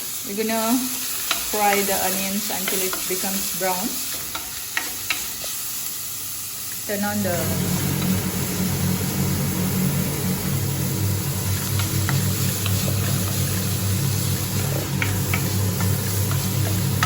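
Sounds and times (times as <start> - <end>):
onions sizzling in pan: 0.0 - 17.0
steady low hum: 7.2 - 17.0
stirring clicks: 14.4 - 17.0.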